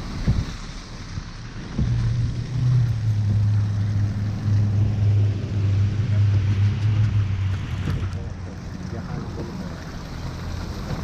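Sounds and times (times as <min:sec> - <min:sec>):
wind noise: 0:00.0 - 0:08.4
low engine hum: 0:00.0 - 0:11.0.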